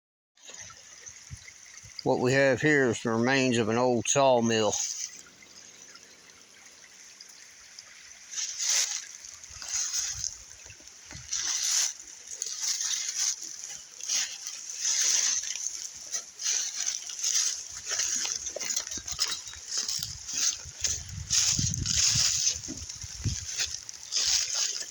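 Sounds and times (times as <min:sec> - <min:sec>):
footsteps on rough ground: 0:08.3 - 0:24.9.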